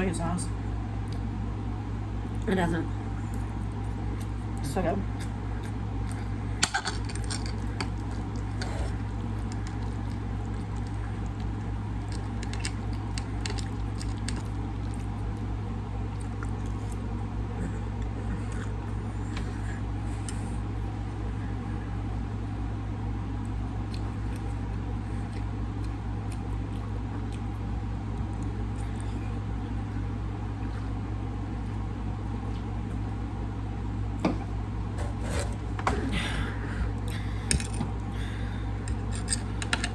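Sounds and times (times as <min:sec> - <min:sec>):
steady low hum: 0:00.0 - 0:39.9
person chewing: 0:03.2 - 0:20.6, 0:23.4 - 0:29.2.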